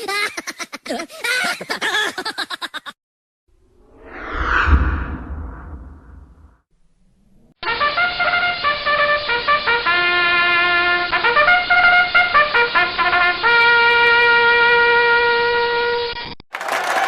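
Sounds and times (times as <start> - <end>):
brass melody: 7.6 - 15.9.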